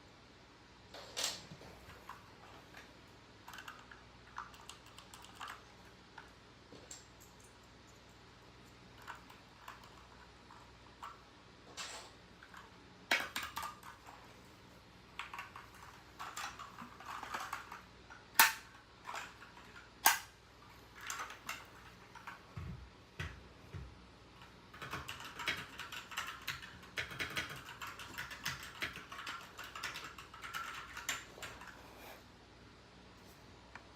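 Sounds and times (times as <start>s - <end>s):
mechanical keyboard typing: 3.4s - 5.9s, 9.0s - 10.7s, 15.2s - 17.8s, 24.7s - 31.8s.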